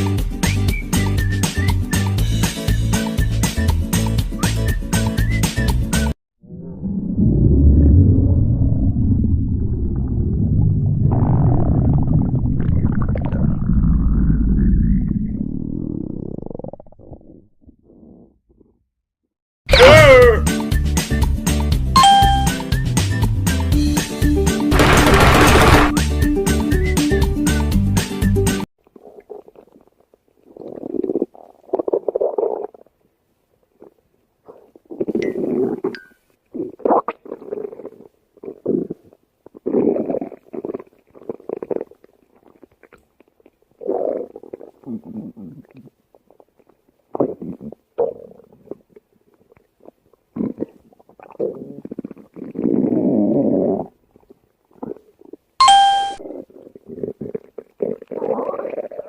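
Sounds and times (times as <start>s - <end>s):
stomach growling: 6.4s - 18.9s, 28.8s - 55.6s, 56.2s - 59.0s
short ringing tone: 22.0s - 22.6s, 55.6s - 56.2s.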